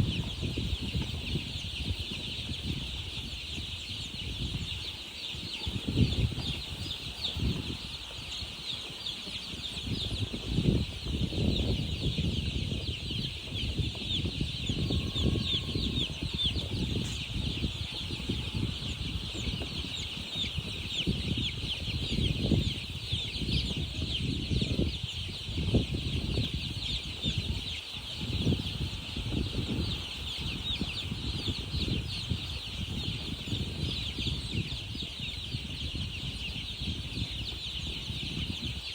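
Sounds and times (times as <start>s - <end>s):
baby chicks peeping: 0.0s - 38.9s.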